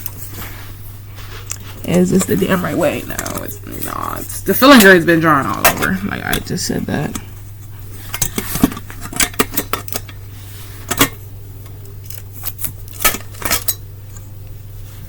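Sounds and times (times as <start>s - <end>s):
steady low hum: 0.0s - 15.0s
metal fan parts clinking: 12.0s - 13.8s.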